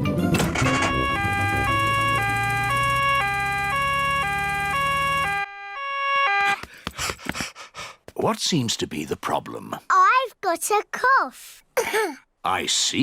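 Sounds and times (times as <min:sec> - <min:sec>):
cartoon two-tone siren: 0:00.4 - 0:06.6.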